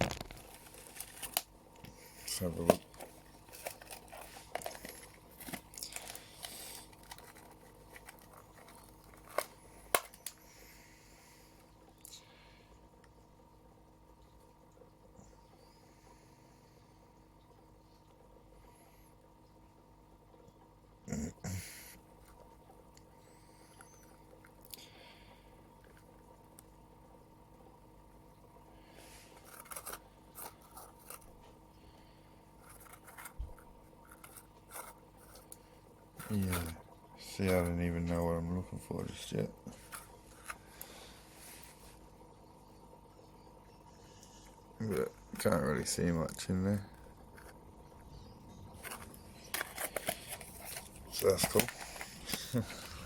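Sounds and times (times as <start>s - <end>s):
crisp clicking and scraping handling: 0.0s - 10.4s, 29.0s - 31.6s, 32.5s - 38.3s, 39.6s - 40.8s, 48.7s - 53.0s
plastic packaging rustling: 0.0s - 10.4s, 29.0s - 31.7s, 32.5s - 38.2s, 39.6s - 41.8s, 48.7s - 53.0s.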